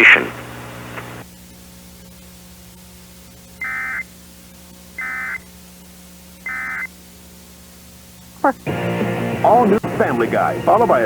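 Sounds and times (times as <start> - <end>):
faint steady hum: 0.0 - 11.0
screeching digital data tones: 3.6 - 4.1, 5.0 - 5.5, 6.4 - 6.9.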